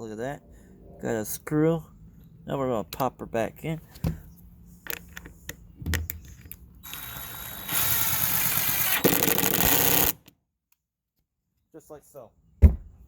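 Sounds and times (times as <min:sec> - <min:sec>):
cordless drill driving screw: 0:06.8 - 0:10.3.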